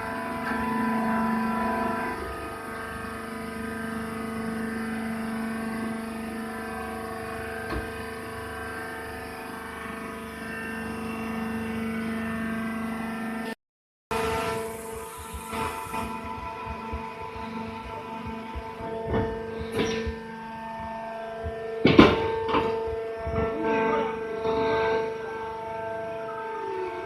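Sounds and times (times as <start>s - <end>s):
machine humming: 0.0s - 27.0s.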